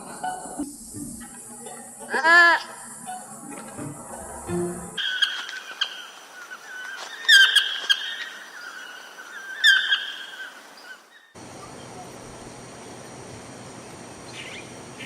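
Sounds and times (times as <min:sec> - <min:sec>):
high animal chorus: 0:00.0 - 0:11.8
even high drone: 0:02.0 - 0:06.2
sharp bird-like calls: 0:05.0 - 0:11.4.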